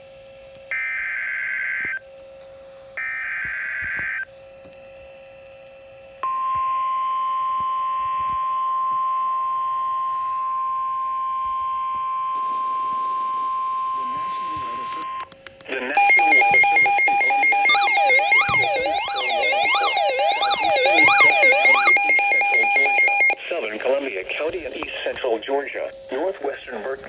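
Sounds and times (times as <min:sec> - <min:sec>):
steady warning alarm tone: 0:00.7 - 0:23.4
warbling digital data bursts: 0:16.0 - 0:23.4.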